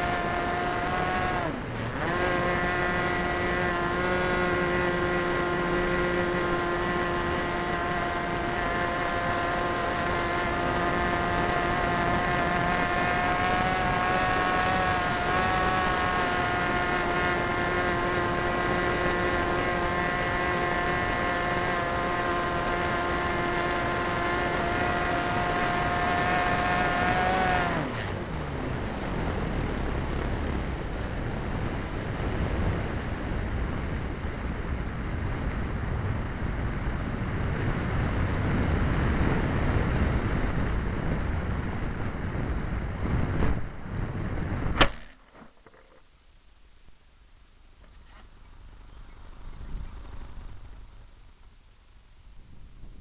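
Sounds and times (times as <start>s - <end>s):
model plane engine running: 0.0s - 32.7s
wind rush: 25.3s - 44.9s.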